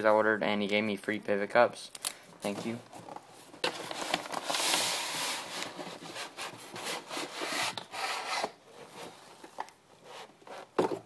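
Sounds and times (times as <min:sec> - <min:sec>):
packaging rustling: 0:02.5 - 0:07.1.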